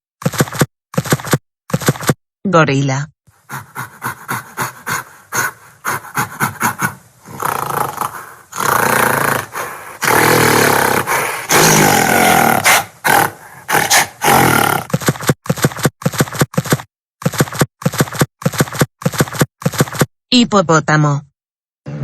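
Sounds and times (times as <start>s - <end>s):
gorilla roaring: 3.5s - 14.9s.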